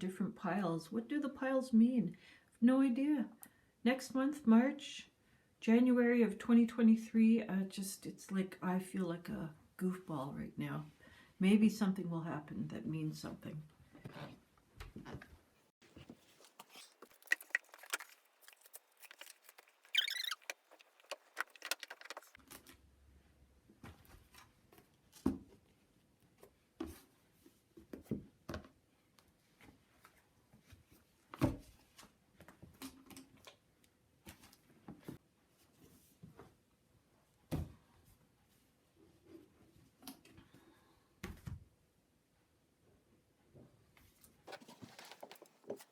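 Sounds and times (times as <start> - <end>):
books knocking and thumping: 15.8 - 22.4, 44.5 - 45.9
paper rustle: 15.8 - 22.6, 44.5 - 45.9.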